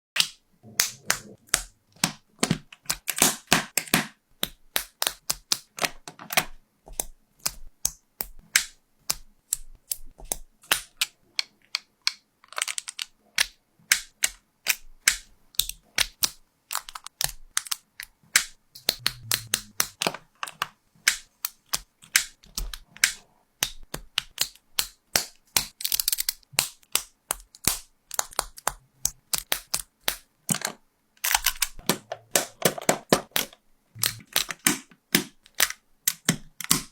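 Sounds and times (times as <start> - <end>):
plastic bricks clicking together: 8.6 - 36.9.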